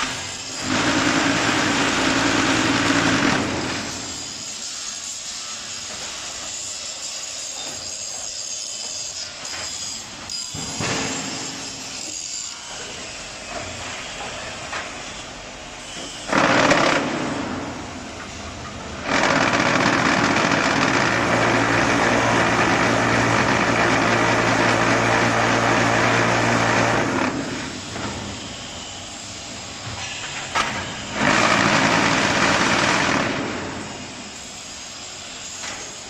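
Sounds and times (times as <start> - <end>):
loud burst: 16.3 - 17.9, 19.0 - 27.6, 31.1 - 34.0.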